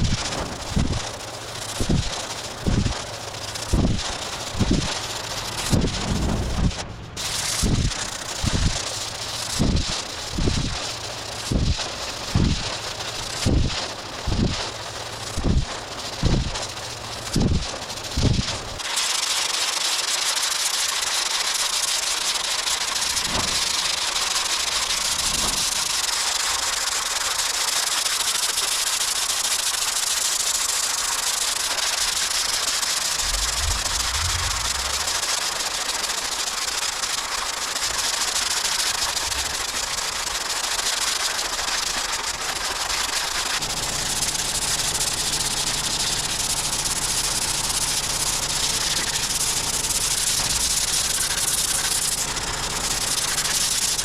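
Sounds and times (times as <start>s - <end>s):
sanding hiss: 0.0s - 54.0s
low hum: 3.7s - 8.6s, 32.7s - 36.4s.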